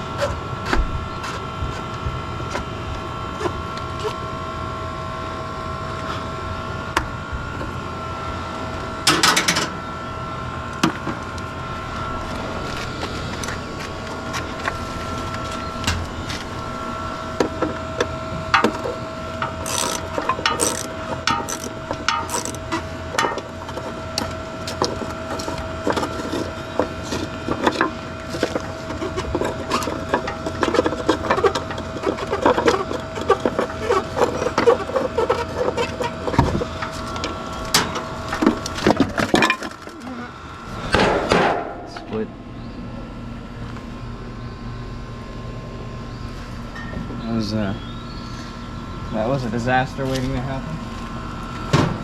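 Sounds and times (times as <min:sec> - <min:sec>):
steady hum: 0:00.0 - 0:52.0
metal and plastic cracking: 0:18.6 - 0:40.1.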